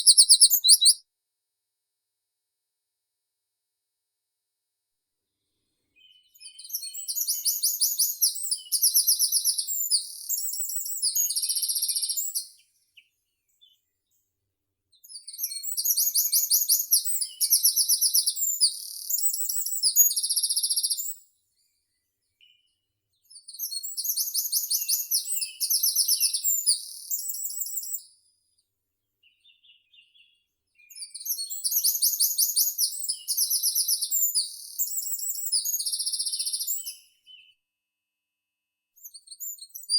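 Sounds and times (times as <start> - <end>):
songbird singing trills: 0.0 - 1.0.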